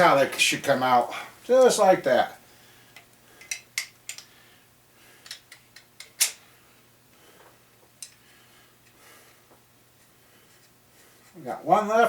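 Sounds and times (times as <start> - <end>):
metal parts clicking and knocking: 3.4 - 4.3.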